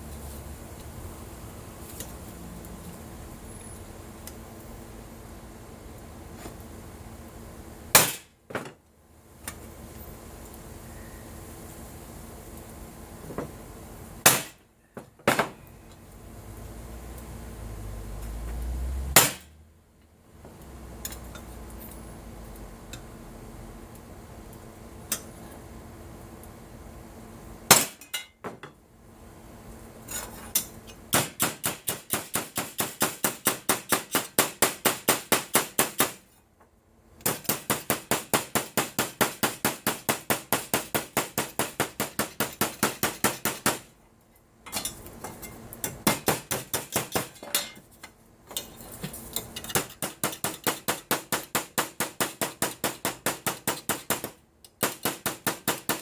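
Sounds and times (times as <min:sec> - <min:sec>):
hammer tapping on aluminum sheet: 0:31.2 - 0:36.2, 0:37.2 - 0:43.9, 0:45.9 - 0:47.4, 0:49.7 - 0:56.0.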